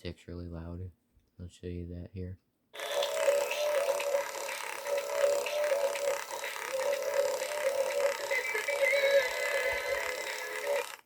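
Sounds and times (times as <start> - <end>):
small electric motor humming: 2.8 - 11.0.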